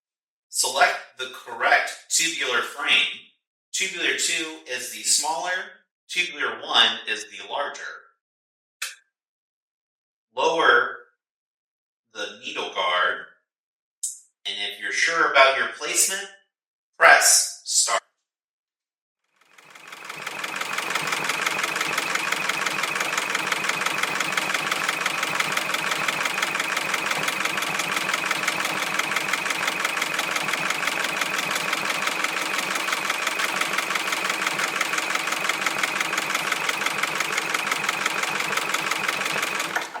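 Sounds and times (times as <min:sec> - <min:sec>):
embroidery machine stitching: 0:19.5 - 0:40.0.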